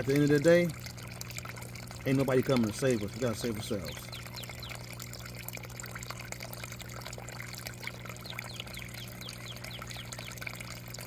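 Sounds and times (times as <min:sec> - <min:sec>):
water trickling and splashing: 0:00.0 - 0:11.0
birds chirping: 0:02.1 - 0:05.1, 0:07.7 - 0:11.0.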